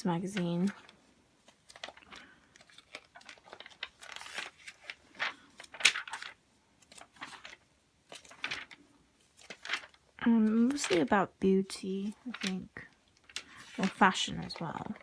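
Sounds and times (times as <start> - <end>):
magazine pages flipping: 0.0 - 11.2, 12.0 - 15.0.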